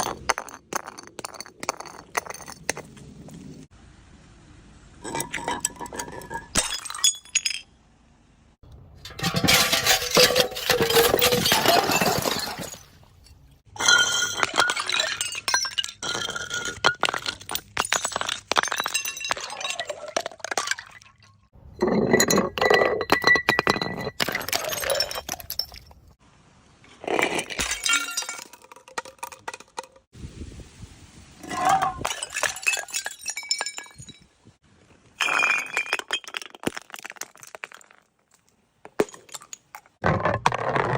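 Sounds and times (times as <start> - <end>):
glass bottles clinking and shattering: 5.0 - 7.7, 9.0 - 26.2, 27.1 - 30.1, 31.4 - 34.3, 35.2 - 38.0.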